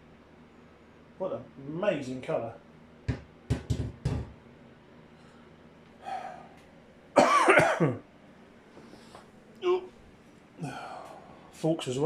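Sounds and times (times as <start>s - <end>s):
man coughing: 7.2s - 8.1s.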